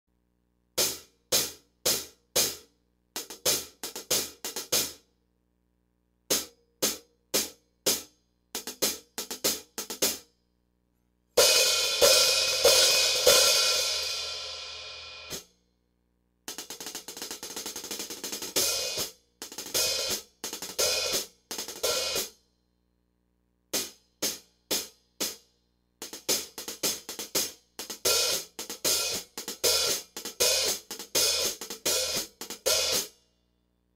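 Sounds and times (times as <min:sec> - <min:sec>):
open hi-hat ringing: 0:11.4 - 0:15.6.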